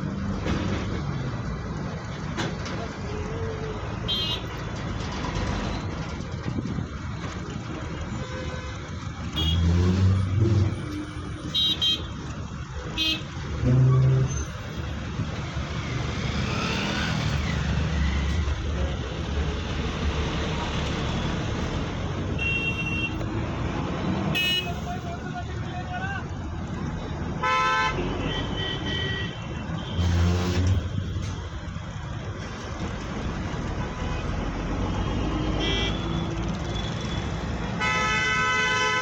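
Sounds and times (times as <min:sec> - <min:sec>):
heavy vehicles passing: 0:00.0 - 0:39.0
traffic engines rumbling: 0:00.0 - 0:39.0
vehicle horn toots: 0:27.4 - 0:30.3, 0:37.8 - 0:39.0.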